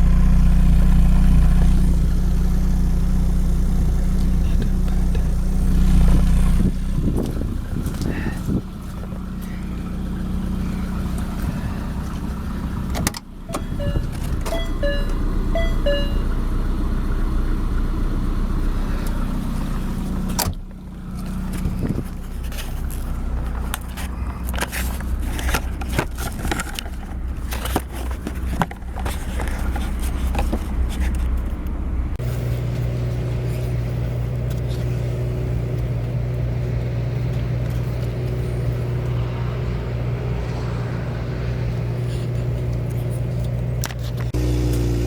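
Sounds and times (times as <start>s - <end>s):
engine running steadily: 0.0s - 45.0s
clicks and scraping handling noises: 20.2s - 35.1s, 41.7s - 44.4s.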